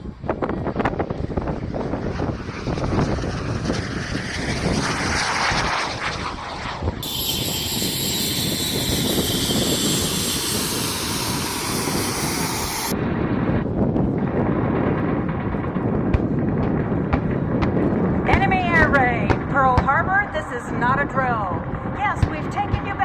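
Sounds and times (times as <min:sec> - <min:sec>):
jet aircraft engine: 0:00.0 - 0:23.0
high-pitched jet whine: 0:02.2 - 0:13.0
rushing air: 0:02.2 - 0:13.3.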